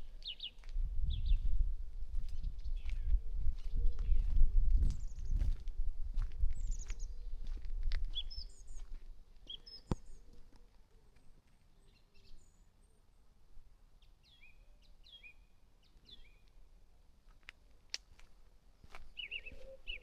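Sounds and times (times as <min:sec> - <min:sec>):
small birds chirping: 0:00.0 - 0:01.5, 0:02.2 - 0:05.6, 0:06.6 - 0:12.9, 0:19.0 - 0:20.0.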